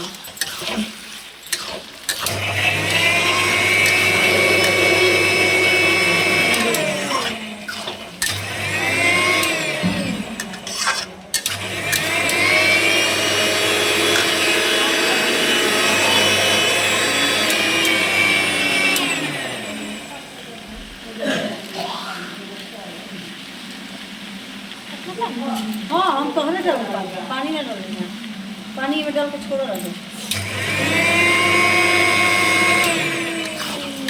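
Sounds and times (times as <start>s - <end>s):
mixer grinder motor whine: 1.6s - 21.0s, 26.6s - 34.0s.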